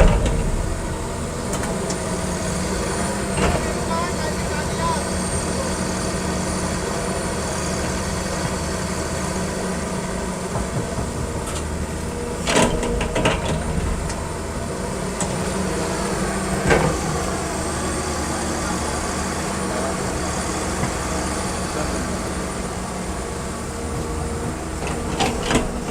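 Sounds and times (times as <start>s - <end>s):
clattering knocks: 0.0s - 2.0s
excavator diesel engine running: 0.0s - 25.9s.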